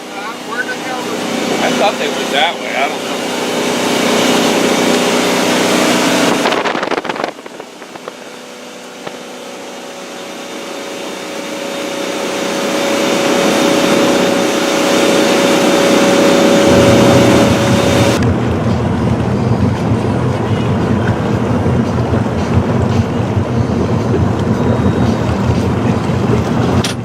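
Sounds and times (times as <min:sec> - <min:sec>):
motor whine: 0:00.0 - 0:26.9
boat motor running: 0:00.0 - 0:27.0.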